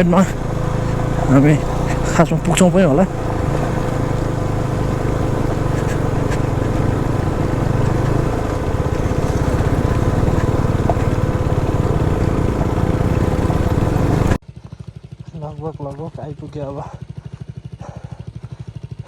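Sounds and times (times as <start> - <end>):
wind and road noise: 0.0 - 14.4
motorcycle engine running: 0.0 - 19.0.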